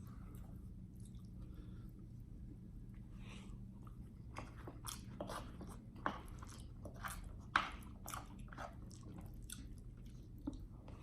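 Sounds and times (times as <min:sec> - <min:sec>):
person chewing food: 0:03.8 - 0:11.0.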